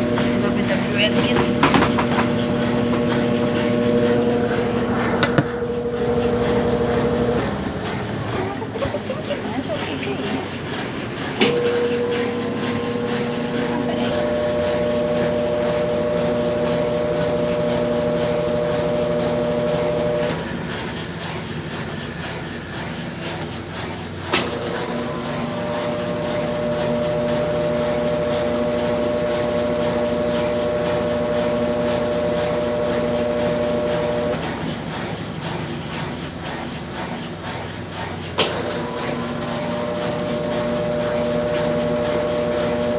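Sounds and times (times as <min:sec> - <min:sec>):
washing machine motor humming: 0:00.0 - 0:42.9.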